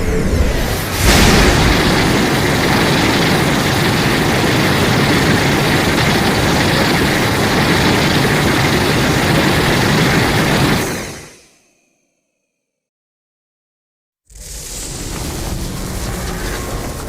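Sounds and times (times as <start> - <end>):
monster rushing rumble: 0.0 - 11.2, 14.5 - 17.0.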